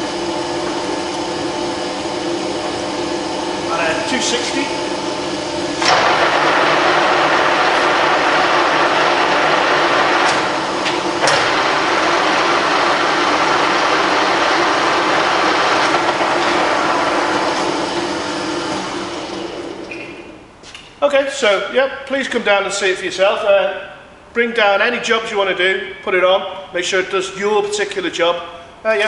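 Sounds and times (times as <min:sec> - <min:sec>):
lathe running: 0:00.0 - 0:19.9.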